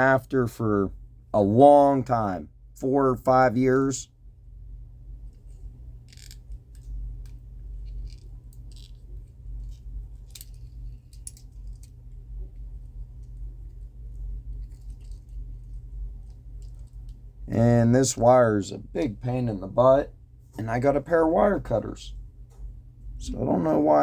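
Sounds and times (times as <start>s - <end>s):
low hum: 0.0s - 24.0s
wire clicking and rattling: 5.3s - 17.4s.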